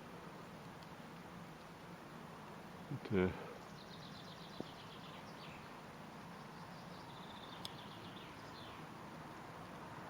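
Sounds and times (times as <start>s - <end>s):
soft outdoor background: 0.0s - 10.0s
small birds chirping: 2.9s - 9.0s
small click: 7.6s - 7.8s.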